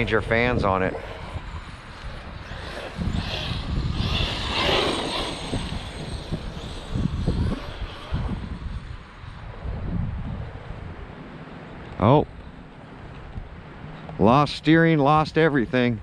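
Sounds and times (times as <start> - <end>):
wind rumble on microphone: 0.0 - 14.6
electric motor whining: 1.0 - 9.2.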